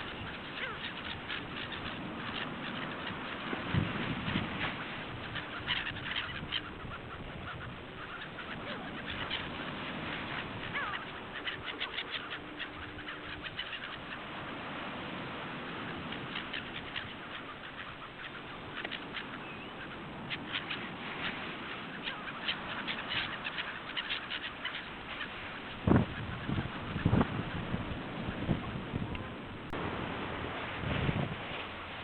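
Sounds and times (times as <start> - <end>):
gulls calling: 0.0 - 30.8.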